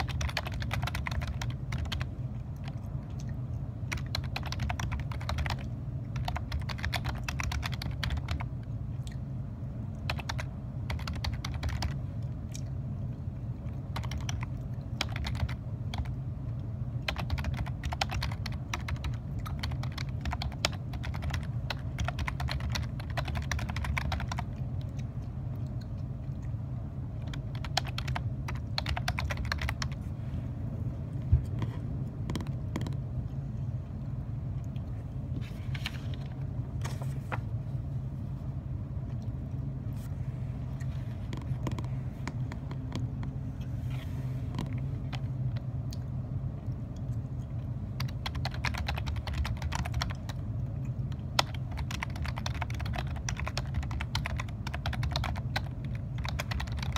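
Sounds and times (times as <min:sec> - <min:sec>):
computer keyboard typing: 0:00.0 - 0:08.5, 0:09.9 - 0:12.3, 0:13.8 - 0:16.2, 0:17.0 - 0:25.7, 0:27.2 - 0:30.0, 0:48.0 - 0:50.4, 0:51.0 - 0:56.9
steady low hum: 0:00.0 - 0:56.9.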